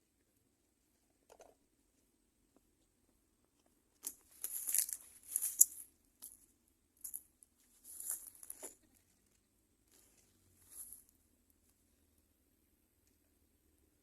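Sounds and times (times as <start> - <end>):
crinkling rustling handling noise: 4.0 - 6.4, 7.0 - 11.1.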